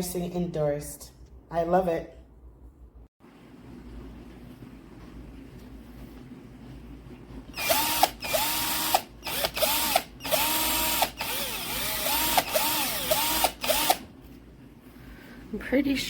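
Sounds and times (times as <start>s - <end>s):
cordless drill motor whining: 7.6s - 14.0s
person talking: 15.5s - 16.0s.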